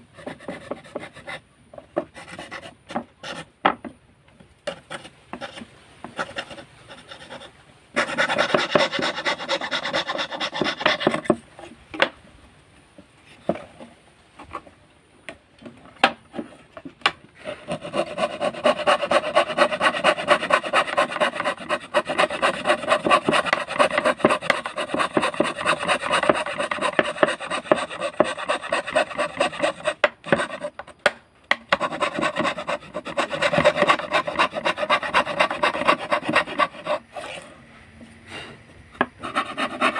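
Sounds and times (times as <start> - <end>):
fretsaw cutting wood: 17.4 - 30.7, 31.8 - 37.4, 39.2 - 39.9.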